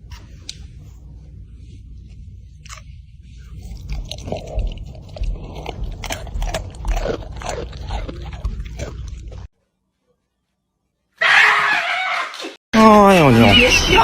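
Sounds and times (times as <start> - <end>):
crunchy chewing: 2.7 - 9.5.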